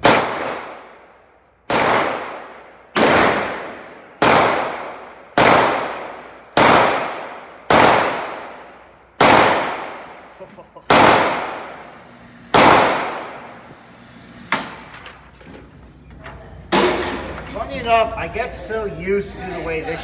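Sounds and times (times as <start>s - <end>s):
powerful gunshots: 0.0s - 1.0s, 1.7s - 10.3s, 10.9s - 11.9s, 12.5s - 13.7s.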